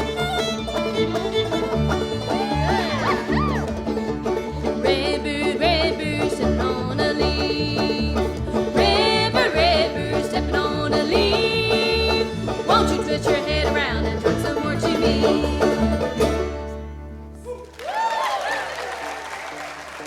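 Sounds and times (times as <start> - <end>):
banjo: 0.0 - 17.7
bluegrass band playing: 0.0 - 17.7
audience cheering and applauding: 1.9 - 4.0, 17.4 - 20.0.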